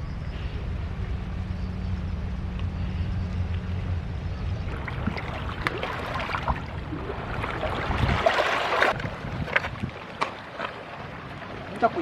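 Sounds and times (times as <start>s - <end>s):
wind buffeting microphone: 3.4s - 12.0s
seawater washing along shore: 4.6s - 12.0s.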